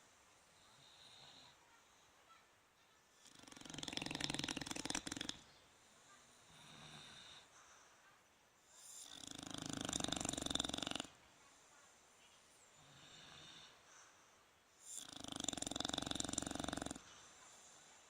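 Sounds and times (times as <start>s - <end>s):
soft breaths: 0.0s - 18.0s
bulldog snoring: 3.2s - 5.4s, 8.8s - 11.2s, 14.8s - 17.2s.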